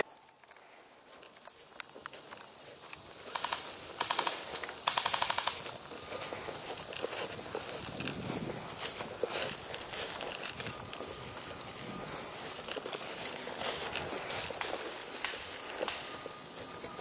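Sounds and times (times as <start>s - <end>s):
crickets chirring: 0.0s - 17.0s
airsoft gunfire bursts: 3.3s - 5.7s.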